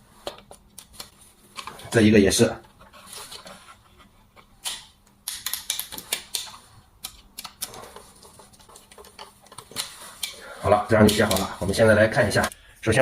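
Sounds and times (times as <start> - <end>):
tool clicking on wire terminals: 4.6 - 7.8.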